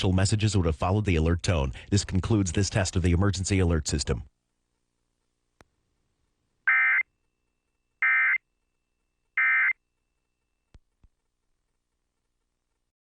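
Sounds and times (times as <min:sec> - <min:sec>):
buzzy two-tone data chirps: 0:06.7 - 0:07.0, 0:08.0 - 0:08.4, 0:09.4 - 0:09.8.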